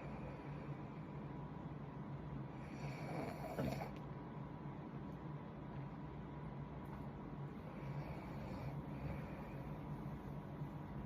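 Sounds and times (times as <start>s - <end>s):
faint low hum: 0.0s - 11.0s
steady low hiss: 0.0s - 11.0s
woman snoring: 2.7s - 3.9s.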